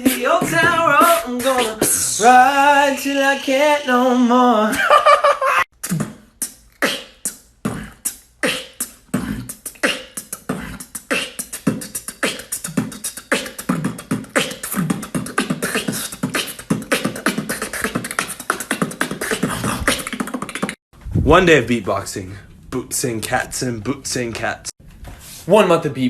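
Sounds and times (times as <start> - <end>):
man beatboxing: 0.0 - 4.2, 5.8 - 20.8.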